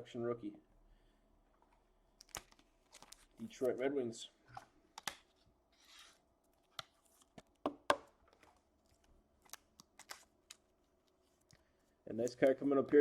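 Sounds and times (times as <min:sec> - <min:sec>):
cards rustling: 0:02.2 - 0:03.9, 0:08.3 - 0:13.0.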